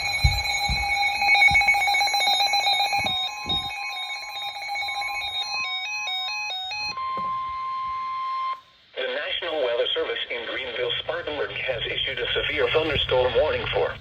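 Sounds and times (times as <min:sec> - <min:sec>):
steady warning alarm tone: 0:00.0 - 0:08.8, 0:09.5 - 0:14.0.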